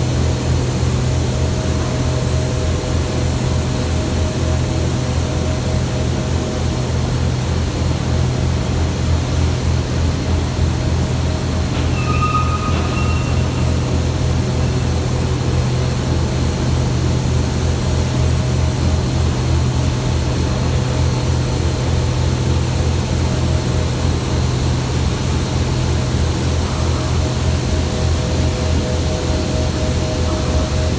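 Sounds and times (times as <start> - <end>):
heavy machinery rumble: 0.1 - 30.9
high whistle-like tone: 11.8 - 14.2.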